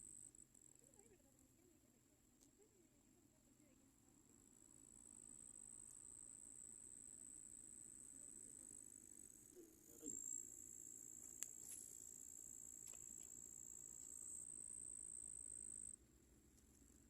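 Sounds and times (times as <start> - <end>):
crickets trilling: 4.6 - 16.0.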